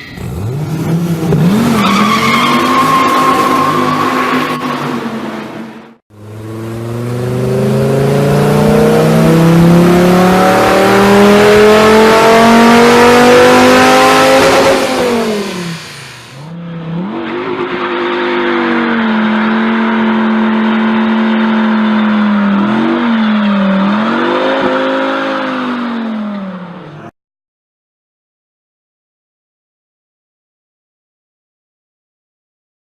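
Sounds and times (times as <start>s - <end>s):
sports car engine accelerating: 0.2s - 2.4s, 5.4s - 27.1s.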